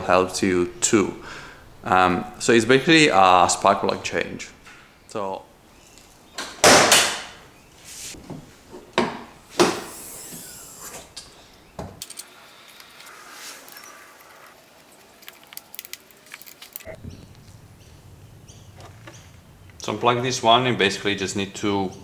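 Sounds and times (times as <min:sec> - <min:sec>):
knocks and clunks of parts: 0:06.4 - 0:07.4, 0:08.2 - 0:10.4, 0:11.2 - 0:12.3
small plastic clicks: 0:14.8 - 0:16.9.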